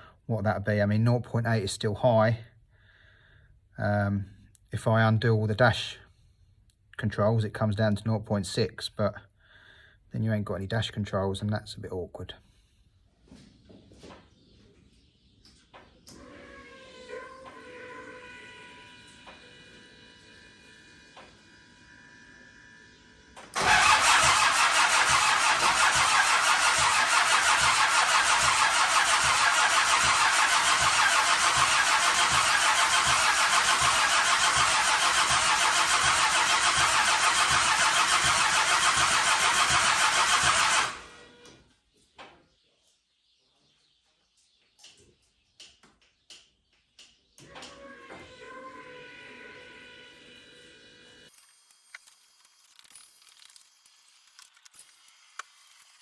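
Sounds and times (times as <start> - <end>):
starter motor cranking diesel engine: 23.5 - 41.4.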